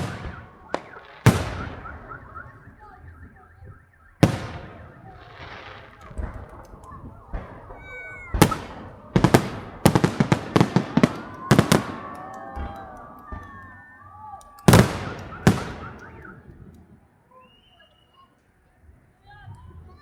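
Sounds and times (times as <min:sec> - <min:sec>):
firework bangs and crackling: 0:00.0 - 0:17.3
firework shell burst: 0:04.2 - 0:16.8.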